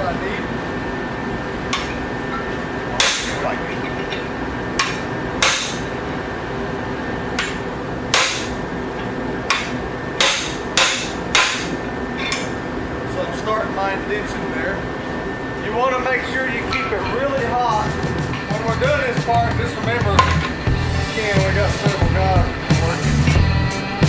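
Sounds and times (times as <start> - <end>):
hammer striking steel on anvil: 1.7 - 5.9, 7.4 - 12.6, 17.8 - 21.0.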